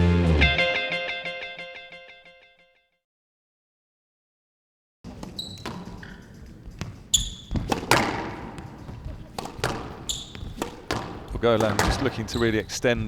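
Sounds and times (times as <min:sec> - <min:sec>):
squash ball cracking off rackets: 0:05.1 - 0:12.8
shoes squeaking on court floor: 0:05.1 - 0:13.0.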